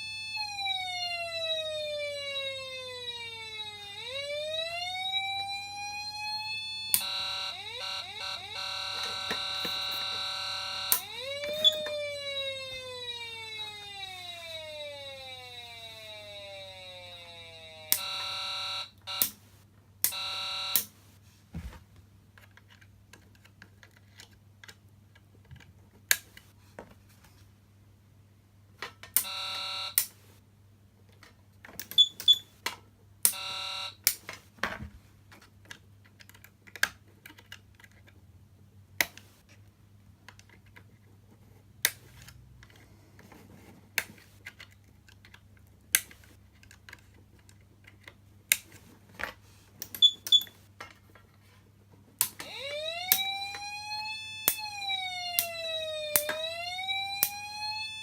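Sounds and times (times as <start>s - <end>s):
short buzzer tones: 6.8s - 12.4s, 15.9s - 19.4s, 20.1s - 20.9s, 29.2s - 30.0s, 33.3s - 34.0s.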